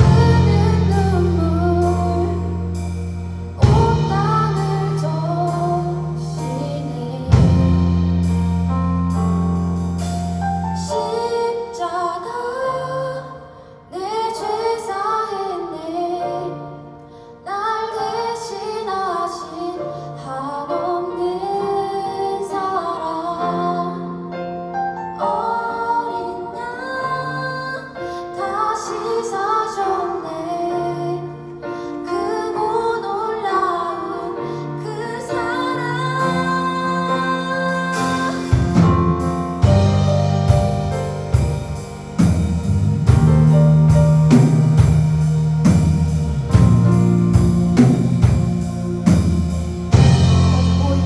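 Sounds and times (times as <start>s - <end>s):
women singing: 0.0s - 8.2s, 10.8s - 24.3s, 25.2s - 39.0s
bass: 0.0s - 11.8s, 34.5s - 51.0s
piano: 0.0s - 51.0s.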